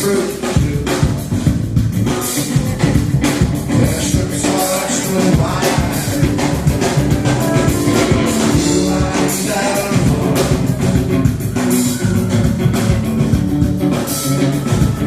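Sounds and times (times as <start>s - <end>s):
drum kit beat: 0.0s - 15.0s
guitar: 0.0s - 15.0s
person singing: 3.7s - 11.2s.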